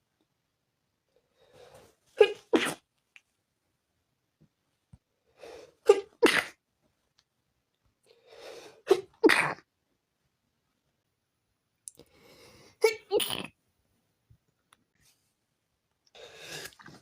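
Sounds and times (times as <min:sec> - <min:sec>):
person sneezing: 0:02.2 - 0:02.8, 0:05.8 - 0:06.6, 0:08.8 - 0:09.6.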